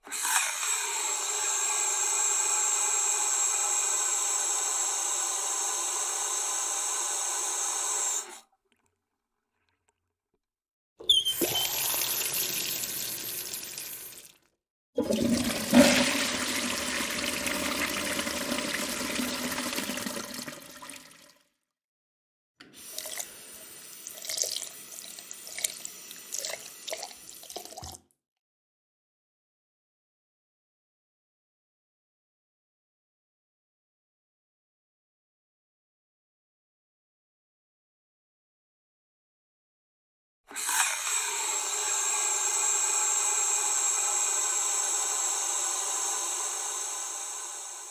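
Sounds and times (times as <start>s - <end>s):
tap water running into sink: 11.1s - 14.4s, 15.0s - 21.3s, 22.8s - 28.0s.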